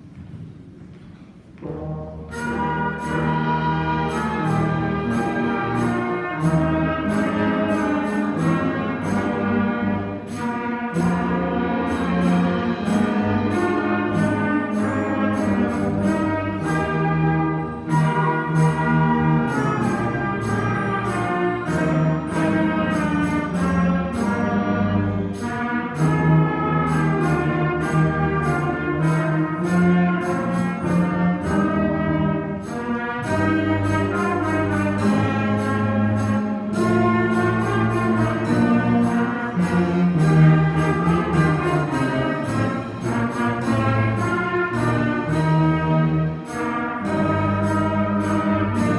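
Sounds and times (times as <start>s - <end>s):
concert band brass and wind chords: 0.0s - 48.9s
percussion beat: 0.4s - 48.9s.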